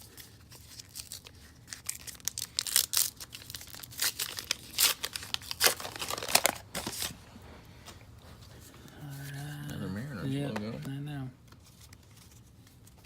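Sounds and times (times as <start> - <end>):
wrapper tearing and crinkling: 0.0 - 7.2.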